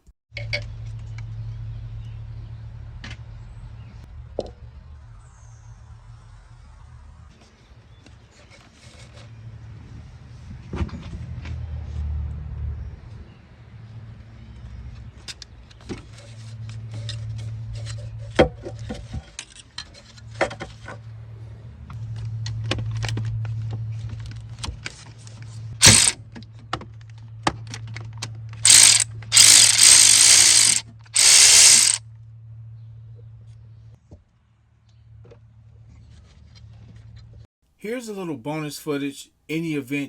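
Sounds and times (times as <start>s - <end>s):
power tool running: 25.8s - 26.2s, 28.6s - 32.0s.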